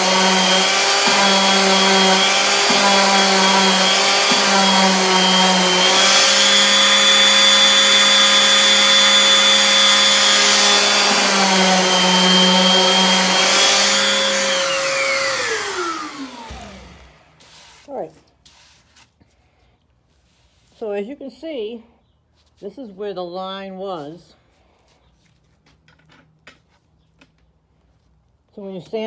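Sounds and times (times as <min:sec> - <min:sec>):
electric sander running: 0:00.0 - 0:17.7.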